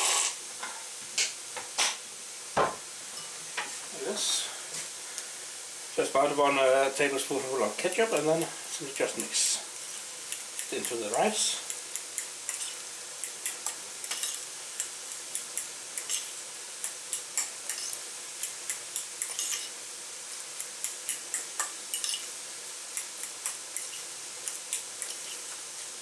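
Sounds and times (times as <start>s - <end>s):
meat sizzling in oil: 0.0s - 26.0s
spoon scraping bowl: 11.7s - 14.4s, 16.0s - 16.3s, 17.1s - 19.8s, 20.8s - 22.3s, 23.2s - 25.5s.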